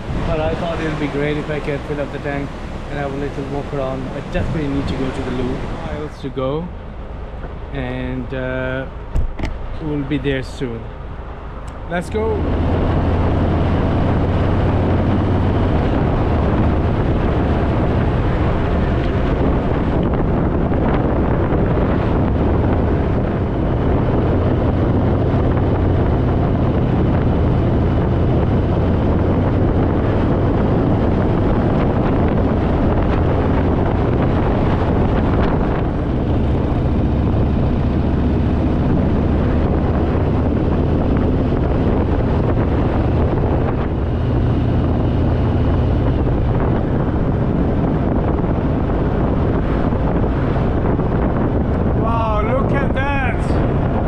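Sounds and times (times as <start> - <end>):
wind on microphone: 0.0 - 54.0.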